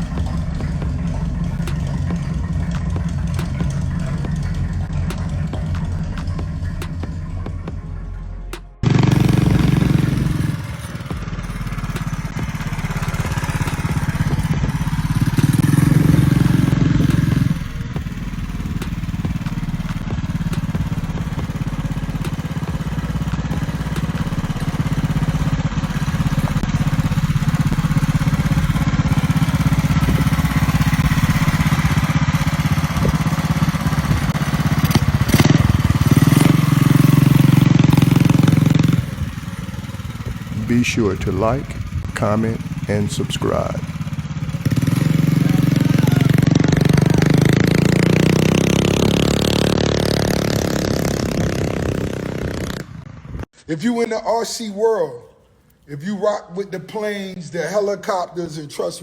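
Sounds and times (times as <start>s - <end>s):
engine idling and revving: 0.0s - 53.5s.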